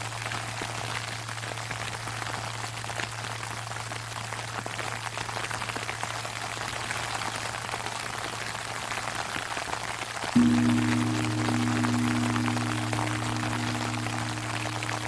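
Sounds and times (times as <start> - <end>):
temple bell hum: 10.4 - 15.0.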